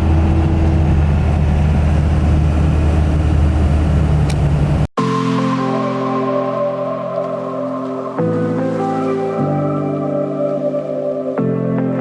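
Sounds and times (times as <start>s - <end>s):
truck driving drone: 0.0s - 4.9s
music: 5.0s - 12.0s.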